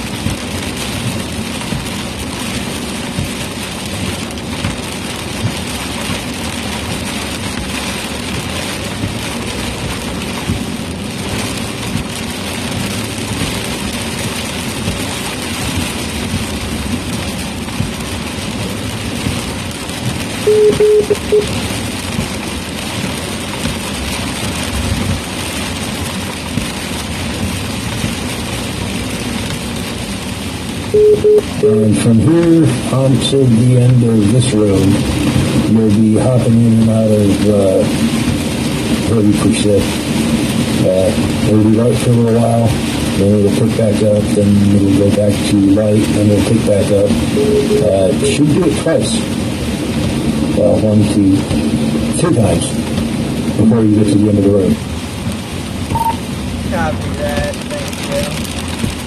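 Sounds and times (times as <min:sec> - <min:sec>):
road and rain noise in vehicle: 0:00.0 - 0:59.0
electronic beep: 0:20.5 - 0:21.5, 0:31.0 - 0:31.5, 0:47.4 - 0:48.0, 0:55.9 - 0:56.2.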